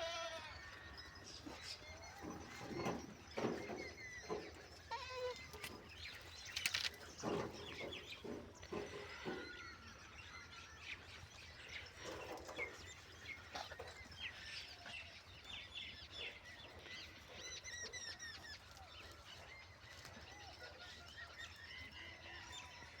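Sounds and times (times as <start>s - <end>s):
birds chirping and trilling: 0.0s - 23.0s.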